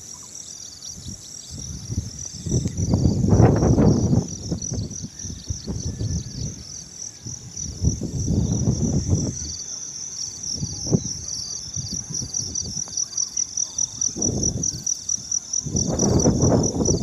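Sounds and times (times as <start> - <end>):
insects chirping: 0.0 - 17.0
wind gusting against microphone: 0.9 - 9.7, 10.4 - 17.0.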